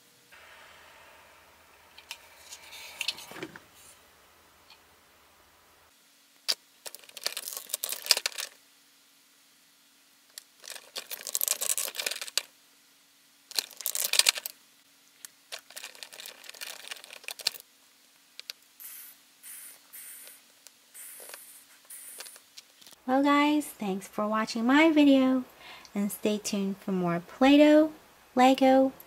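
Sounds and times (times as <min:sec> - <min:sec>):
faint steady hum: 0:00.0 - 0:29.0
rustling and clicking of toy pieces: 0:06.5 - 0:08.6, 0:10.3 - 0:12.5, 0:13.5 - 0:14.6, 0:15.2 - 0:17.6, 0:18.3 - 0:18.6, 0:21.2 - 0:23.0.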